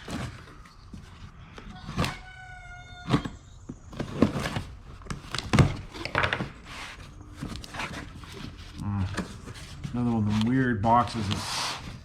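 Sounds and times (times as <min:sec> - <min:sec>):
boxes knocking and thudding: 0:00.0 - 0:02.3, 0:03.0 - 0:09.9.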